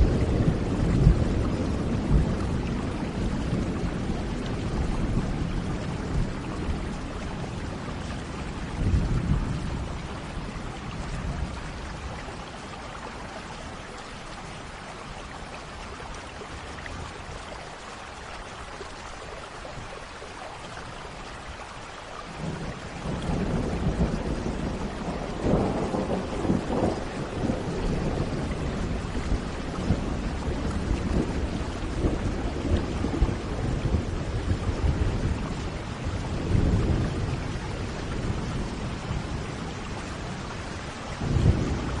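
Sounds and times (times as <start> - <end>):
rolling thunder: 0.0 - 12.2, 22.4 - 42.0
steady rain: 0.0 - 42.0.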